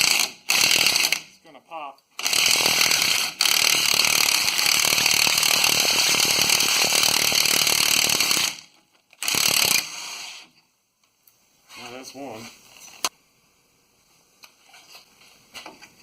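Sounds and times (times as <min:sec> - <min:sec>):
impact wrench hammering: 0:02.2 - 0:09.9.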